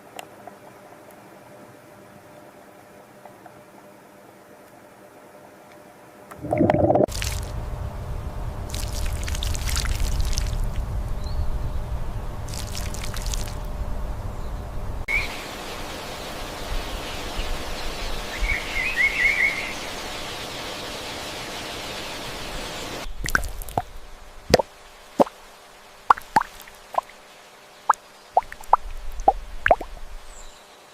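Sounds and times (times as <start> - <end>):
water sloshing and splashing: 6.3 - 7.5, 8.7 - 10.8, 12.5 - 13.7, 26.0 - 27.2
running water trickling: 6.3 - 7.6, 8.6 - 10.9, 12.4 - 13.7, 23.0 - 30.6
low rumble: 6.4 - 15.1
water drops dripping: 23.2 - 23.9, 26.1 - 27.2, 27.9 - 30.0.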